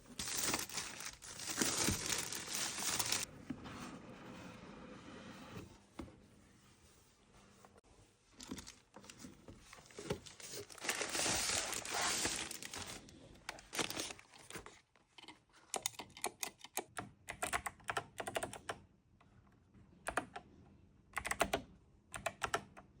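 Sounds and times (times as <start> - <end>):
crinkling and rustling: 0.0 - 4.4, 7.4 - 15.6.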